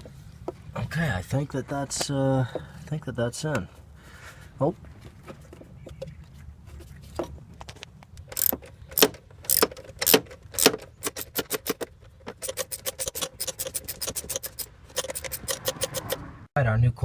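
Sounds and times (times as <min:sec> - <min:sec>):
sharp clicks and knocks: 0:06.8 - 0:16.3
socket ratchet clicking: 0:08.2 - 0:16.3.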